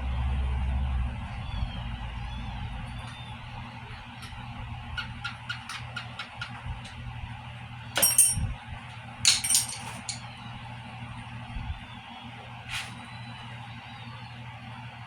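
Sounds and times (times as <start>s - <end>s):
low steady hum: 0.0s - 15.0s
bright metallic clinking: 8.0s - 8.5s, 9.3s - 10.3s.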